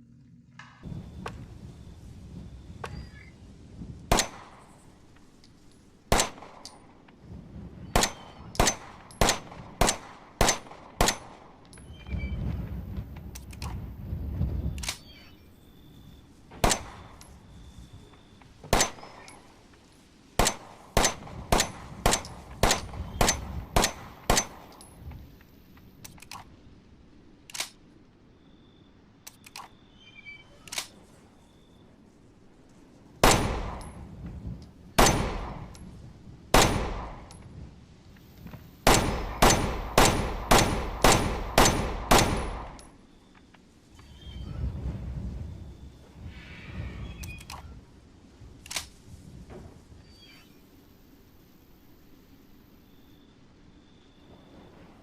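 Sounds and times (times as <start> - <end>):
pistol shots: 4.1 - 4.6, 20.4 - 24.7, 33.2 - 33.9, 35.0 - 35.7, 36.5 - 37.3, 38.8 - 42.8.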